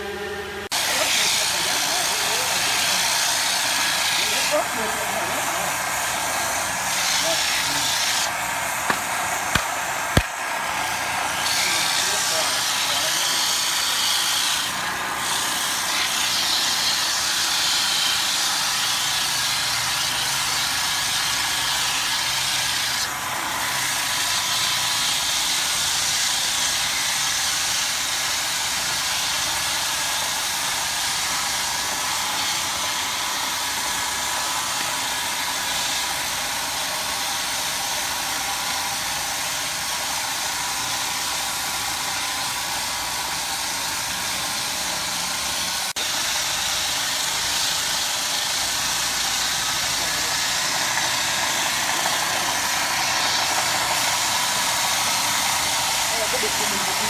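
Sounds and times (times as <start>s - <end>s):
electric motor whining: 0.0s - 57.0s.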